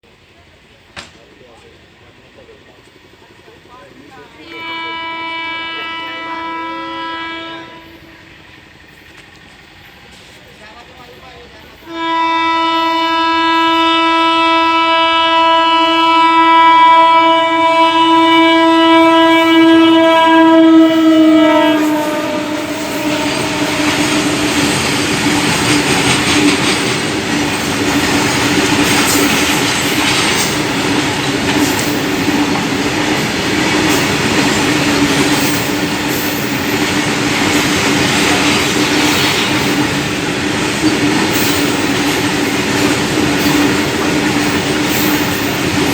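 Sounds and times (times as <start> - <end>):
train wagons clattering past: 0.1 - 45.9
locomotive horn blast: 4.2 - 8.3, 11.8 - 26.4.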